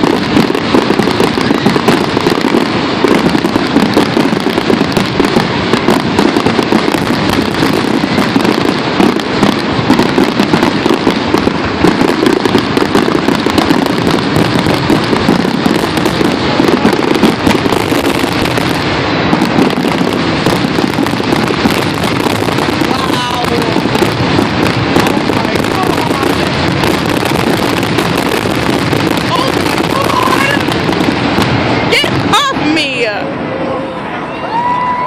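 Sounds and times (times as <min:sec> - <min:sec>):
fireworks bangs and crackles: 0:00.0 - 0:35.0.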